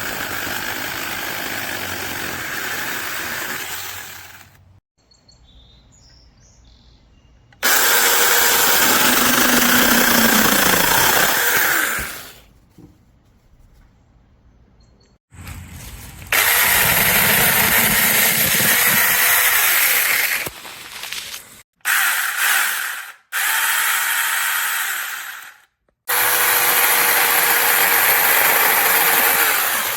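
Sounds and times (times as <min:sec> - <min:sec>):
mini chainsaw running: 0:00.0 - 0:04.6, 0:07.6 - 0:12.4, 0:16.3 - 0:20.5, 0:21.8 - 0:29.9.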